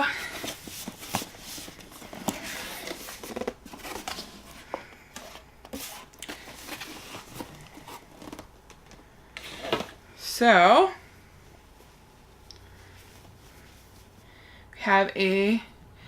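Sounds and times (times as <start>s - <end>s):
cardboard packaging rustling: 0.0s - 10.0s.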